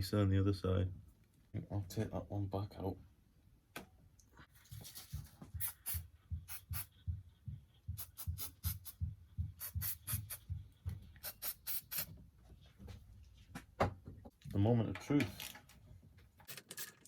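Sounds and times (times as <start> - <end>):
low drum beat: 5.6 - 11.1.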